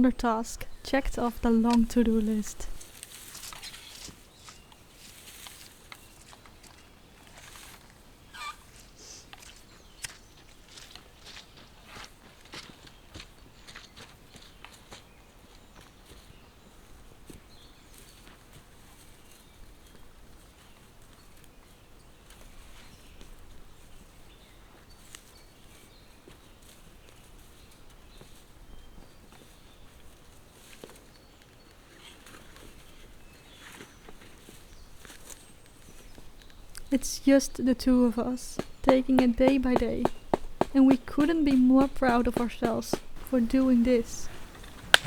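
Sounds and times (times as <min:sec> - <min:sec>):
short wavering bird call: 0:08.3 - 0:08.7.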